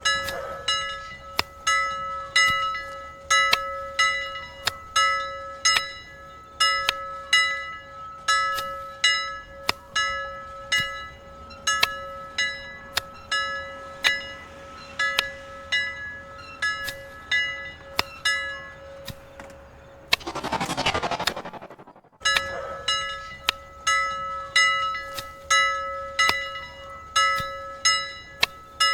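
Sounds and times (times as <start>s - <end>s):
loud rush of noise: 20.2s - 22.2s
steady tone: 20.2s - 22.2s.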